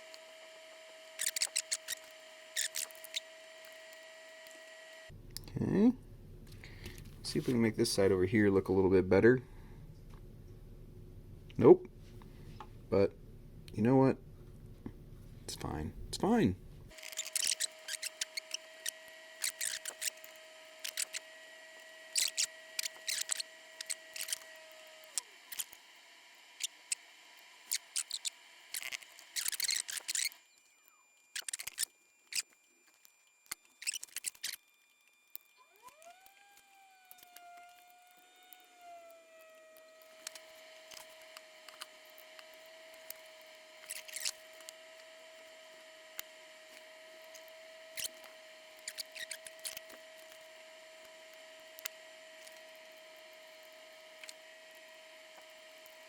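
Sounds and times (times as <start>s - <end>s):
steady whine: 0.0s - 56.0s.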